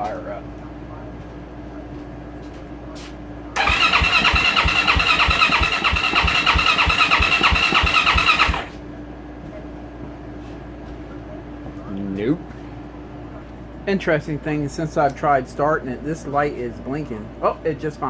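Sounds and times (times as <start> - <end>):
motorcycle engine cranking: 3.6 - 8.8.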